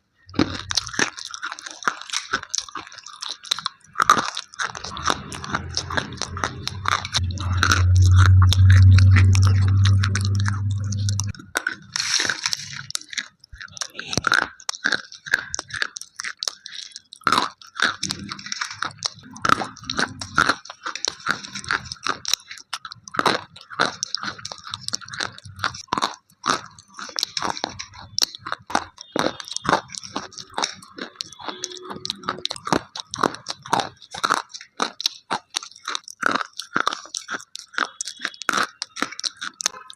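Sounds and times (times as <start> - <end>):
slate pencils being chewed: 0.3 - 39.9
loud low hum: 4.8 - 11.4.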